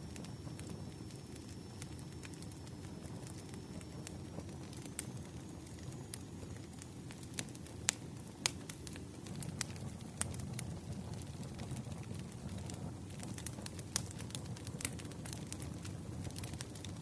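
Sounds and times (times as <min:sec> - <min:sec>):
fire rumbling: 0:00.0 - 0:17.0
firewood crackling pops: 0:01.4 - 0:17.0.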